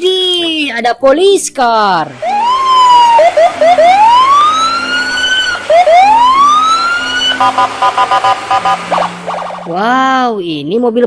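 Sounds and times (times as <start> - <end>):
police siren wailing: 2.1 - 9.9
siren yelps: 2.2 - 9.7
rapid pulsing beep: 2.3 - 9.8.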